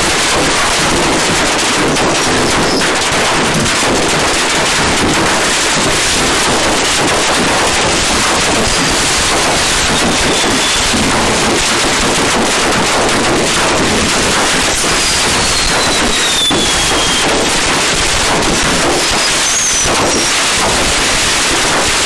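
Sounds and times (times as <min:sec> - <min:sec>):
fireworks crackling bangs: 0:00.0 - 0:22.0.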